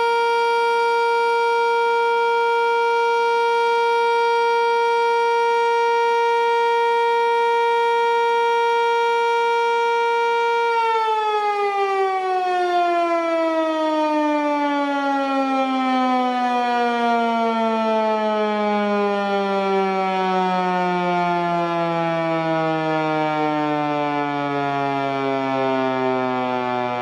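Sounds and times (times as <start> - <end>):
warning siren winding down: 0.0 - 27.0.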